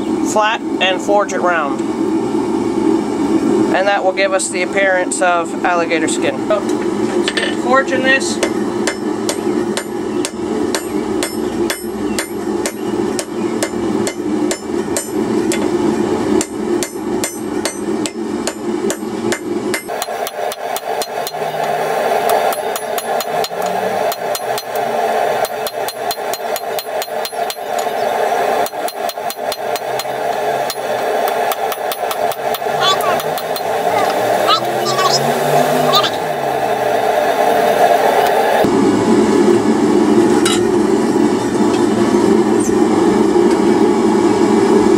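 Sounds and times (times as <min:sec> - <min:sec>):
steady background noise: 0:00.0 - 0:44.9
hammer striking steel on anvil: 0:08.4 - 0:15.7, 0:16.4 - 0:28.0, 0:28.6 - 0:33.9.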